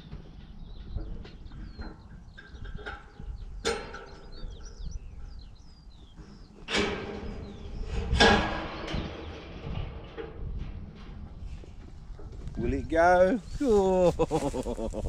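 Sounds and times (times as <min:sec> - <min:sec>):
small birds chirping: 0:00.0 - 0:10.3, 0:11.4 - 0:15.0
clattering bangs: 0:06.6 - 0:12.9.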